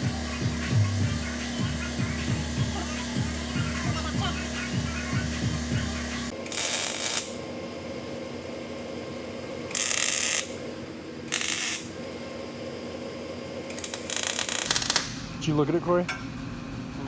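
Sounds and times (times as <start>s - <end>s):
welding crackling hiss: 0.0s - 7.4s, 11.3s - 11.9s, 13.7s - 15.1s.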